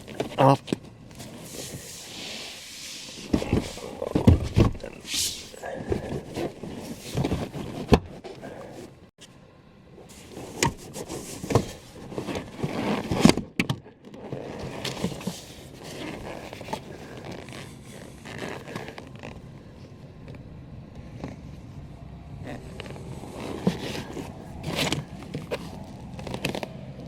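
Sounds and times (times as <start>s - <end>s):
rustling: 22.5s - 26.8s.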